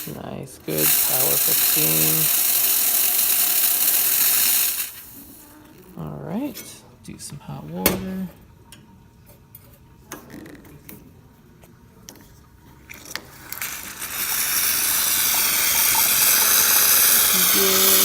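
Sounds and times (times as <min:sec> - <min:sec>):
hot water hissing from espresso wand: 0:00.0 - 0:05.9, 0:12.9 - 0:18.0.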